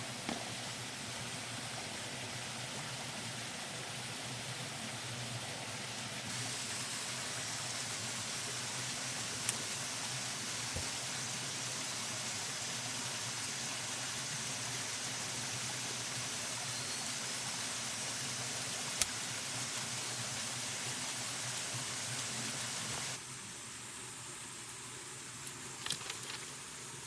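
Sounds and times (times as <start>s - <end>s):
steady hiss: 0.0s - 27.0s.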